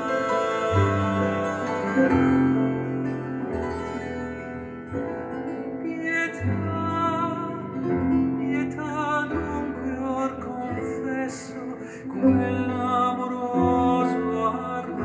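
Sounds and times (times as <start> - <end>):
long held bass notes: 0.0 - 5.8
plucked strings: 0.0 - 15.0.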